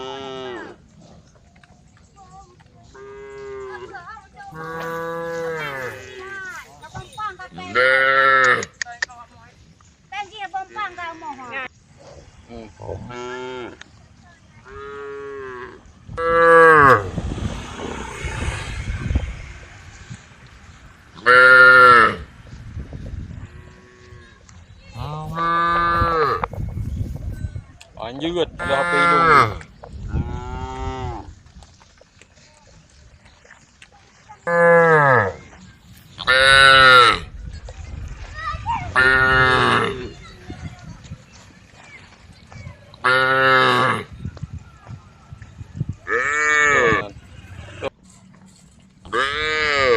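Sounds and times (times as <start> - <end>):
cows mooing: 0.0 - 0.8, 3.0 - 6.7, 7.6 - 8.8, 14.6 - 17.2, 21.1 - 22.3, 23.3 - 26.5, 28.6 - 31.3, 34.4 - 35.5, 36.2 - 37.3, 39.0 - 40.2, 43.0 - 44.2, 46.1 - 47.9, 49.0 - 49.9
rushing noise: 16.8 - 23.0.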